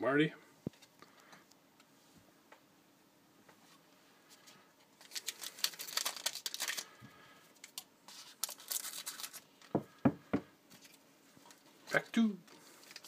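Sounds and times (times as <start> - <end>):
foil wrapper tearing and crinkling: 5.0 - 7.0, 7.6 - 9.6, 12.7 - 13.0.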